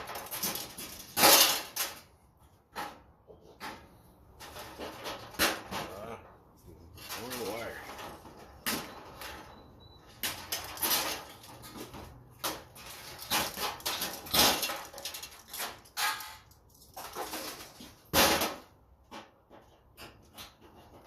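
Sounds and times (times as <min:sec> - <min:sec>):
metal knocks clanks and scrapes: 0:00.0 - 0:21.0.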